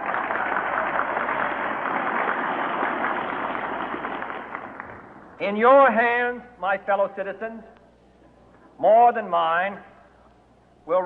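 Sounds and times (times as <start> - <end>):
large crowd applauding: 0.0 - 5.3.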